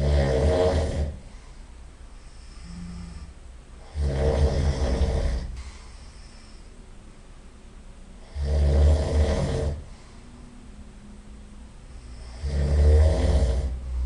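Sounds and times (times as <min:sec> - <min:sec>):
person snoring heavily: 0:00.0 - 0:01.3, 0:02.2 - 0:06.7, 0:08.2 - 0:10.0, 0:12.0 - 0:14.0
soft breathing: 0:00.8 - 0:07.0, 0:09.5 - 0:10.7, 0:11.8 - 0:12.7, 0:13.4 - 0:14.0.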